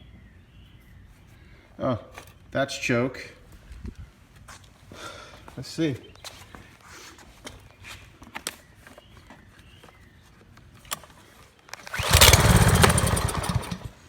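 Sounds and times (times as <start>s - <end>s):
small gas engine starting and dying: 11.7s - 14.0s.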